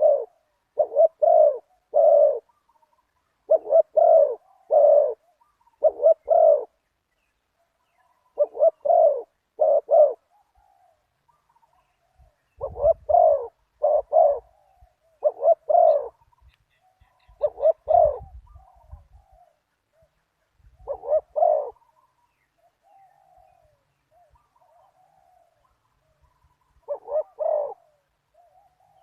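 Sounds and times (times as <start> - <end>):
faint answering dove coos: 0.0 - 2.5, 20.8 - 22.1, 26.9 - 29.0
doves cooing: 0.0 - 6.8, 8.0 - 20.2, 20.8 - 29.0.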